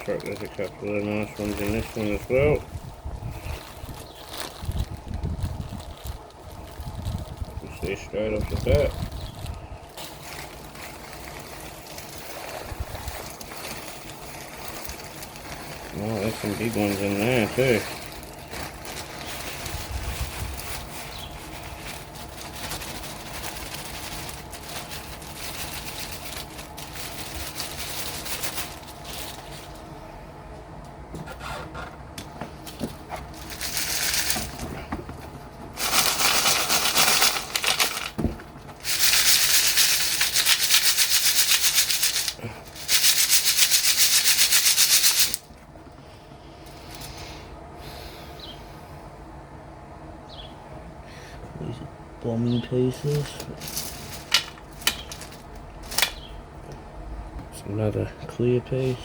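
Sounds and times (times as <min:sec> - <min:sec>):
gravel rattling in a sieve: 0:00.0 - 0:29.8, 0:32.6 - 0:45.6, 0:52.8 - 0:56.2.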